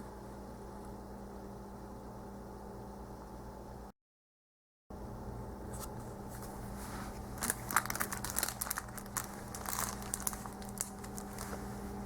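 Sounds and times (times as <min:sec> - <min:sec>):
packaging crinkling and rustling: 0:06.4 - 0:12.0.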